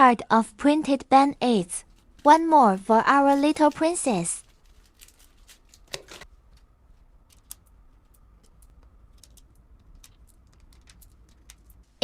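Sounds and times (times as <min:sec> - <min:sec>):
packaging rustle: 0:01.8 - 0:06.7
small items clicking and tapping: 0:04.4 - 0:11.9.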